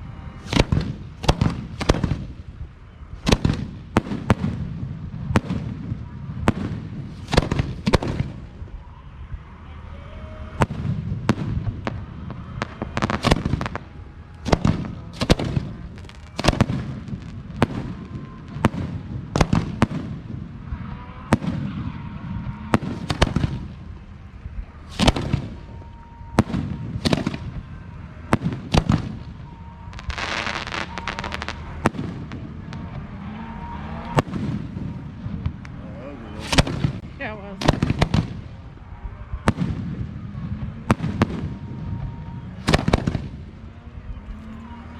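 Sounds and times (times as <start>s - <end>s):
dense fireworks crackling: 0.0s - 44.9s
fireworks shells bursting: 24.8s - 35.8s.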